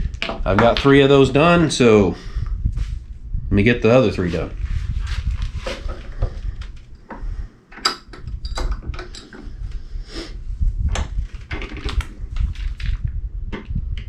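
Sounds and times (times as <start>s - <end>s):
low rumble: 0.0s - 14.0s
hardware knocking and clicking: 7.1s - 9.5s.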